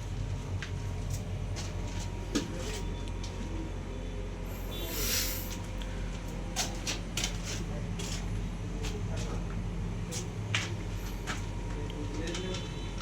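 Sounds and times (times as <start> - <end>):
steady low hum: 0.0 - 13.0
brief hiss: 4.6 - 5.6.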